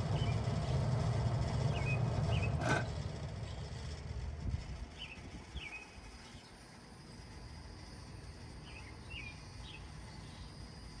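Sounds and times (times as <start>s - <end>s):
faint insect drone: 0.0s - 11.0s
bird chirping: 8.6s - 10.6s.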